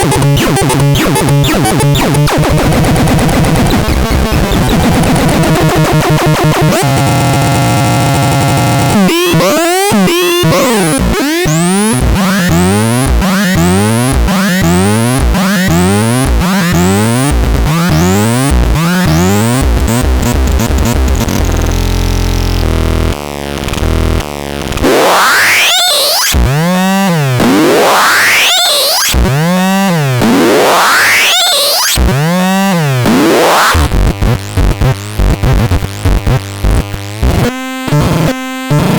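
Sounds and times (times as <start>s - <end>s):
synthesizer warbling sweeps: 0.0s - 7.8s, 8.4s - 19.5s.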